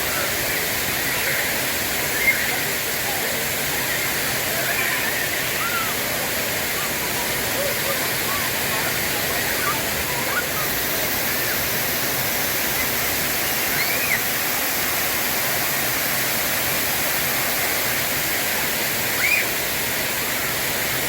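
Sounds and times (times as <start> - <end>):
waterfall rushing: 0.0 - 21.0.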